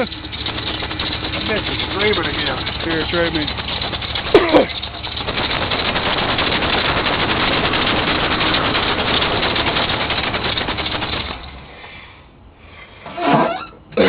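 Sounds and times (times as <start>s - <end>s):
van engine running: 0.0s - 12.1s
belt squealing: 13.1s - 13.9s.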